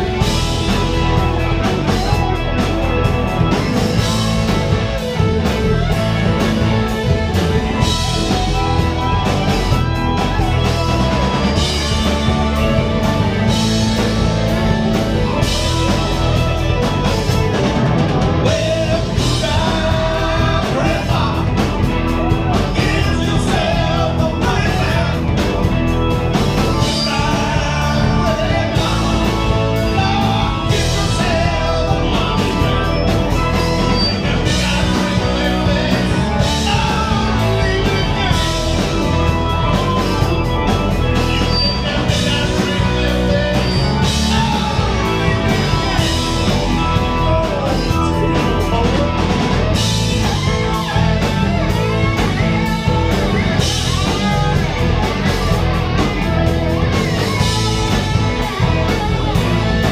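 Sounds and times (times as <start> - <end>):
rock band playing: 0.0 - 59.9
person singing: 18.4 - 25.5, 26.6 - 40.3, 41.4 - 50.0.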